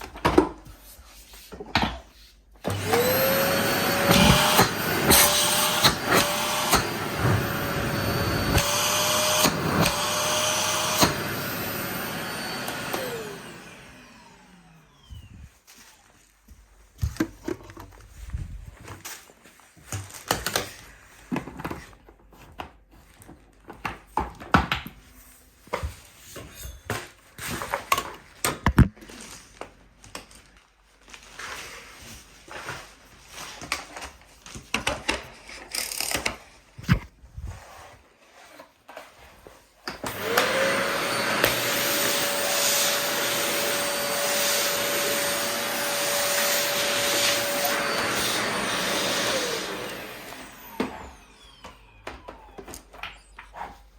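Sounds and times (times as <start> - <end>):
vacuum cleaner motor whine: 2.6 - 15.5, 39.8 - 53.8.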